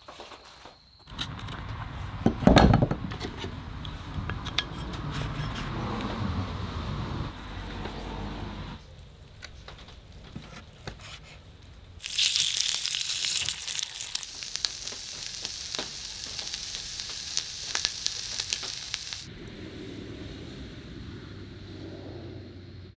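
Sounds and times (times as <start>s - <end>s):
food sizzling in a hot pan: 12.0s - 19.4s.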